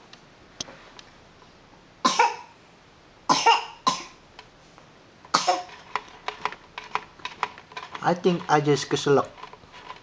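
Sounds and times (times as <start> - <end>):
person coughing: 5.4 - 5.7.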